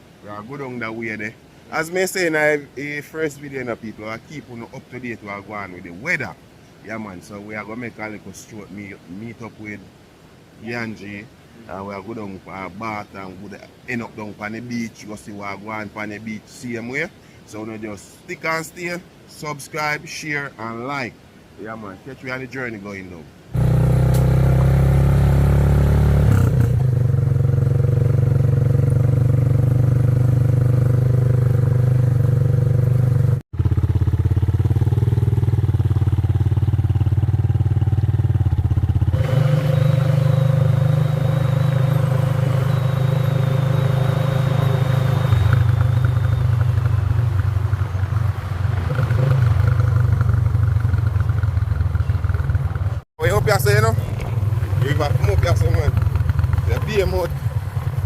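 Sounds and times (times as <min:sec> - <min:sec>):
motorcycle engine running: 0:23.6 - 0:58.0.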